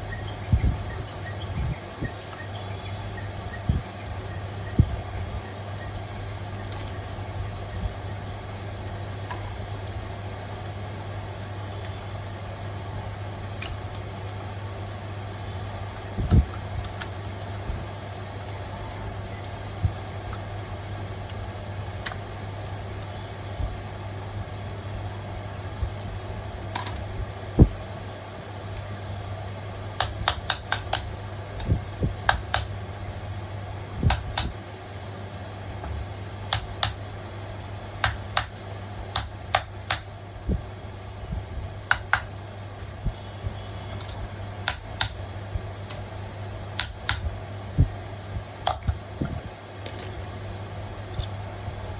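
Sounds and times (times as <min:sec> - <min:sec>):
sharp clicks and knocks: 0:30.0 - 0:32.7, 0:34.0 - 0:34.6, 0:35.8 - 0:37.0, 0:38.0 - 0:40.1, 0:41.9 - 0:42.3, 0:43.9 - 0:45.2, 0:46.8 - 0:47.3, 0:48.6 - 0:50.2.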